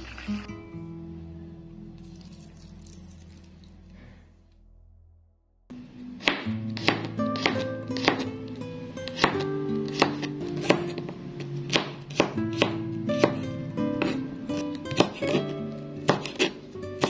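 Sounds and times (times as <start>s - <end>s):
background music: 5.7s - 17.0s
knife chopping on cutting board: 6.2s - 8.3s, 9.0s - 13.4s, 14.0s - 17.0s.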